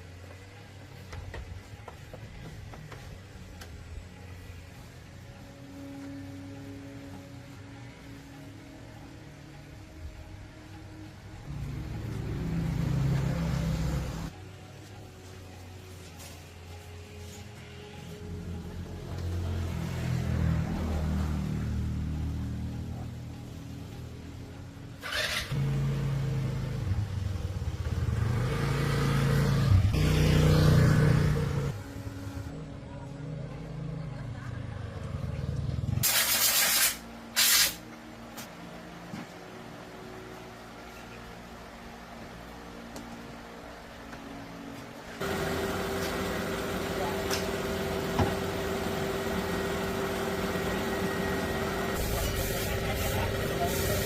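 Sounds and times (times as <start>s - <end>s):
brief hiss: 36.0s - 37.9s
machine humming: 45.2s - 52.1s.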